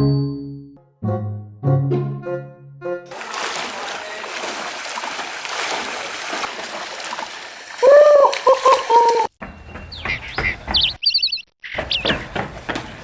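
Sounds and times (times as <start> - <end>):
loud pitched call: 7.8 - 9.3
small birds chirping: 7.8 - 13.0.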